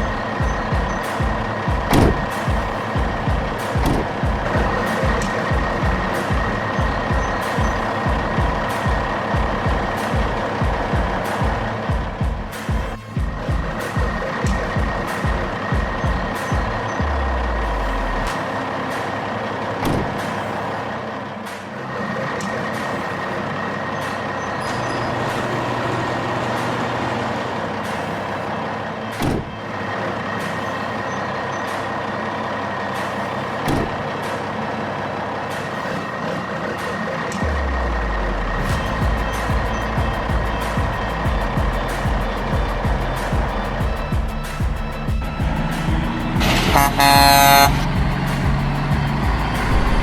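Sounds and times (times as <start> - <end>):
sharp knocks: 0.0 - 16.9, 19.8 - 20.6, 29.1 - 29.6, 33.0 - 34.5
heavy truck engine running: 0.0 - 50.0.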